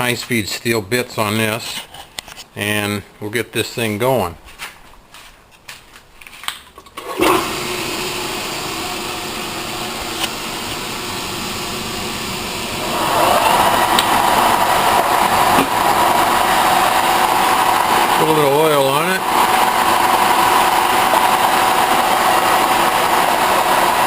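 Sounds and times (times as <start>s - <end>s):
lathe bit cutting steel: 7.2s - 24.0s
metal lathe running: 7.2s - 24.0s.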